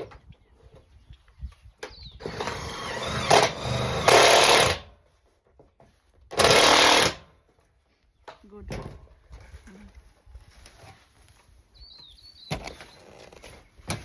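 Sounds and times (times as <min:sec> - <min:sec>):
power tool motor running: 0:02.2 - 0:04.9, 0:06.3 - 0:07.3.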